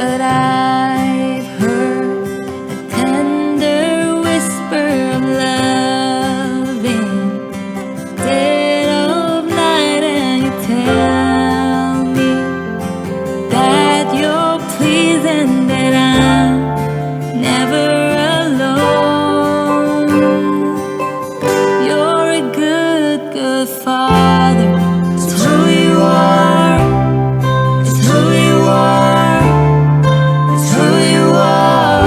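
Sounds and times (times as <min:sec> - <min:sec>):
strummed acoustic guitar: 0:00.0 - 0:32.0
person singing slow melody: 0:13.5 - 0:32.0.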